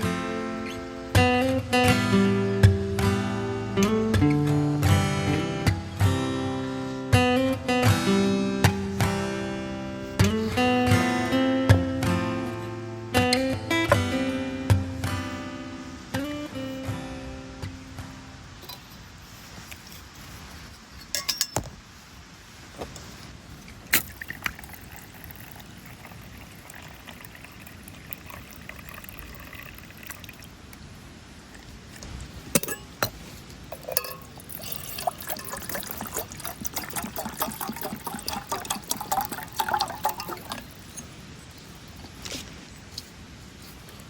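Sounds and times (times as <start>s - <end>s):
knocks and clinks of camp gear: 18.6s - 21.8s, 31.9s - 36.8s
splashing and crackling strokes: 18.7s - 44.0s
water being poured: 23.7s - 42.2s.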